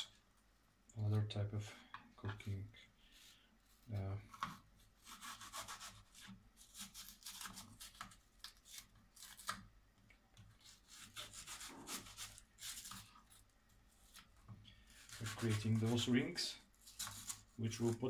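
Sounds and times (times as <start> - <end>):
knife slicing onion: 4.3 - 9.7, 10.5 - 13.4, 14.0 - 16.2.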